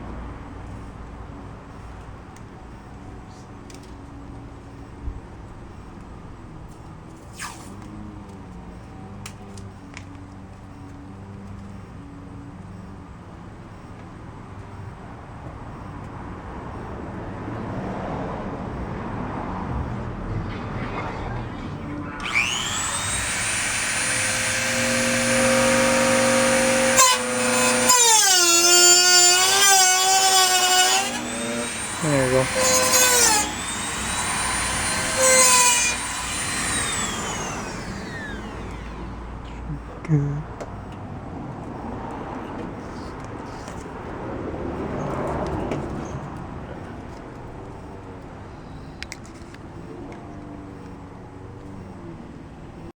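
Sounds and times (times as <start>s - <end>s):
vehicle passing: 15.7s - 26.6s, 40.5s - 52.9s
power tool cutting metal: 20.4s - 39.2s.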